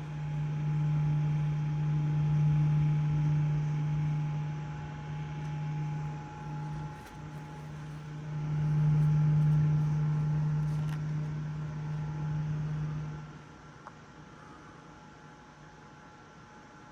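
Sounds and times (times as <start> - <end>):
small motor buzzing hum: 5.8 - 13.3.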